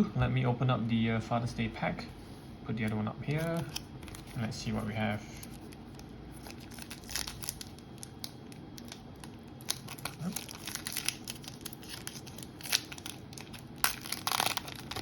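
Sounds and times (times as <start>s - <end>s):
wrapper rustling and clicking: 5.3s - 15.0s.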